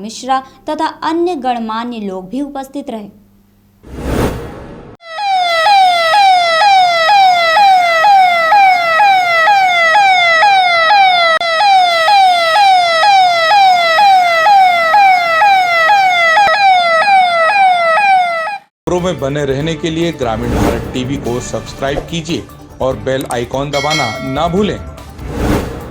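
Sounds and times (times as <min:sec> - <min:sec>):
electronic siren falling sweep: 0:05.0 - 0:18.7.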